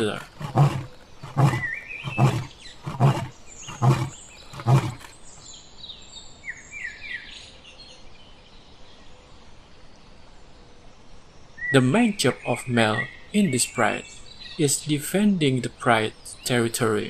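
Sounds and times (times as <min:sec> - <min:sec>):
lion roaring: 0:00.0 - 0:05.1.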